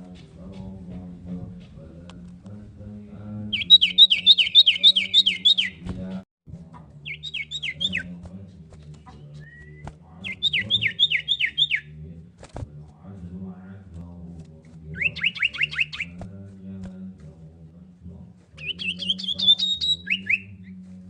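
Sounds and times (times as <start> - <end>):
bird chirping: 3.4 - 6.2, 6.8 - 12.0, 14.8 - 16.3, 18.4 - 20.9
rising bird whistle: 3.5 - 5.8, 7.0 - 8.1, 9.4 - 11.9, 15.0 - 16.2, 18.6 - 20.7.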